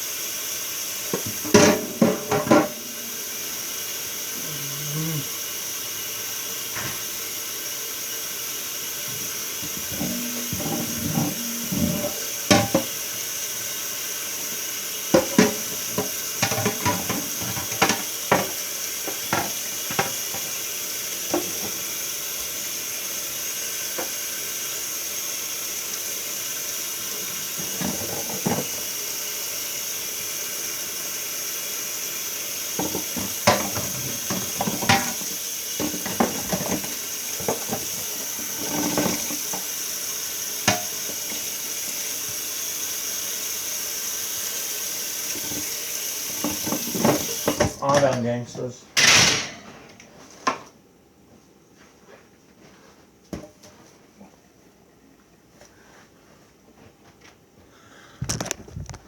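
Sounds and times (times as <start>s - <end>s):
tap water running into sink: 0.0s - 5.0s, 6.0s - 48.2s
dishes clinking and knocking: 1.1s - 3.4s, 9.1s - 13.0s, 15.1s - 20.5s, 27.6s - 28.8s, 32.8s - 39.6s, 40.7s - 41.4s, 46.4s - 48.2s, 49.0s - 49.8s.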